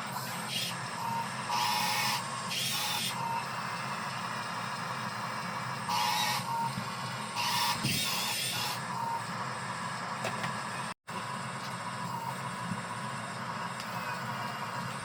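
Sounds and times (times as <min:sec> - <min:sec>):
small electric motors whirring: 0:00.0 - 0:04.2, 0:05.4 - 0:09.3.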